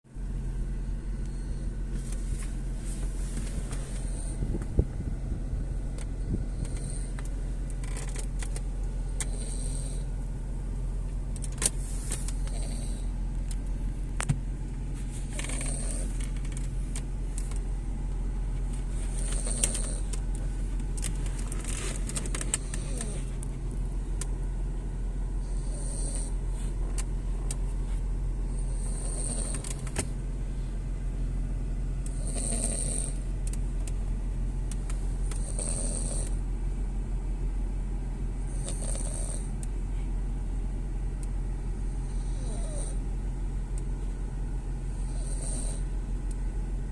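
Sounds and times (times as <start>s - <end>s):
car cabin drone: 0.1s - 46.9s
dog snoring: 3.4s - 4.4s, 6.4s - 7.2s, 9.2s - 10.1s, 12.2s - 13.2s, 15.3s - 16.3s, 19.0s - 20.2s, 21.4s - 23.4s, 25.4s - 26.4s, 28.5s - 30.0s, 32.0s - 33.2s, 35.2s - 36.4s, 38.4s - 39.6s, 41.8s - 43.0s, 44.9s - 45.9s.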